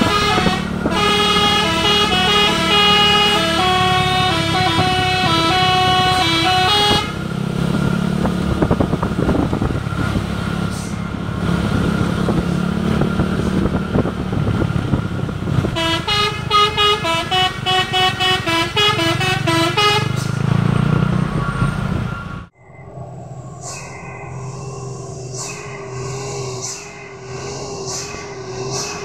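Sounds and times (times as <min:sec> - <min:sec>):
musical horn melody: 0:00.0 - 0:07.3, 0:15.7 - 0:20.3
heavy vehicle engine: 0:00.0 - 0:22.5, 0:23.1 - 0:29.0.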